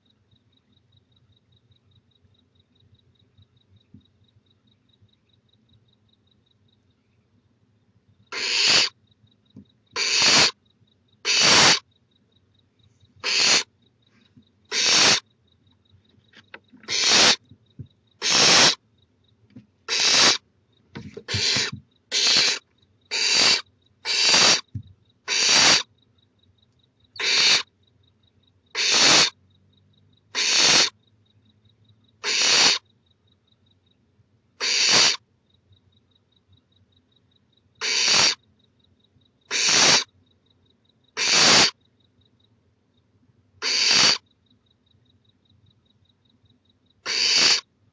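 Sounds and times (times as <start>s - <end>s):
owlet hoarse hisses: 8.4s - 8.9s, 10.0s - 10.6s, 11.3s - 11.8s, 13.2s - 13.6s, 14.7s - 15.2s, 16.9s - 17.4s, 18.2s - 18.8s, 19.9s - 20.4s, 21.3s - 24.6s, 25.3s - 25.8s, 30.4s - 30.9s, 34.6s - 35.2s, 39.5s - 40.0s, 41.2s - 41.7s, 43.6s - 44.2s.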